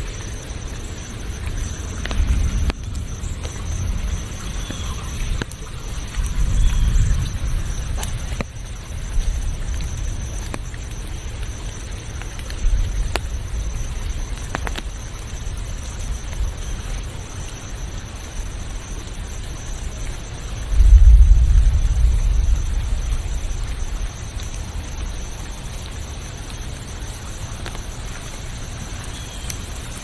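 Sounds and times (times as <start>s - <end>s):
uneven low rumble: 20.7s - 25.1s.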